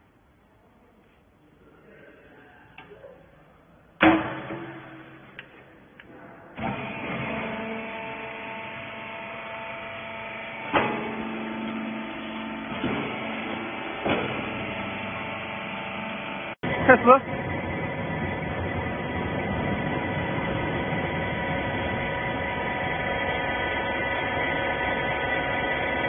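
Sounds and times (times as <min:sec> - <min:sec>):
loud metallic bang: 0:04.0 - 0:05.4
baler motor humming: 0:06.6 - 0:26.0.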